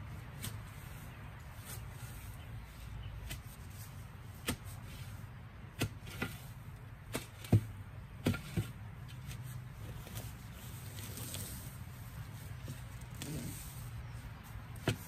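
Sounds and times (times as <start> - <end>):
hand tool chopping: 4.4 - 4.8, 5.7 - 6.5, 14.8 - 15.0.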